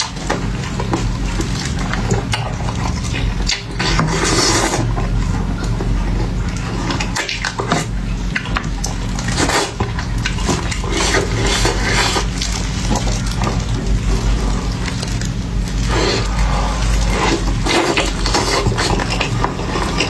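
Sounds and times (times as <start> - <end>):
chewing and mouth noises: 0.0 - 20.0
low hum: 13.2 - 20.0.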